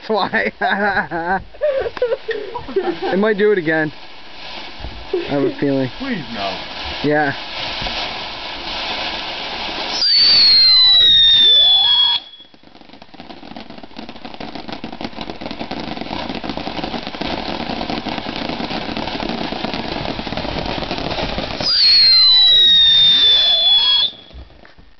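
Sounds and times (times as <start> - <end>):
hiss of burning sparks: 0.3 - 24.8
firework whistle: 9.6 - 12.8, 20.1 - 24.6.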